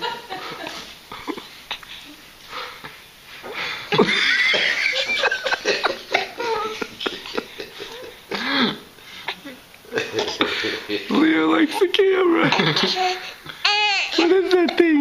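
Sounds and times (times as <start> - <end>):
young children laughing: 3.9 - 8.9, 9.5 - 14.9.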